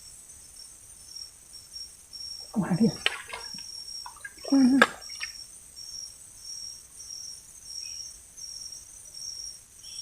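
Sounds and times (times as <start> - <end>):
insects hissing: 0.0 - 10.0
insect calling in high pulses: 2.1 - 6.1.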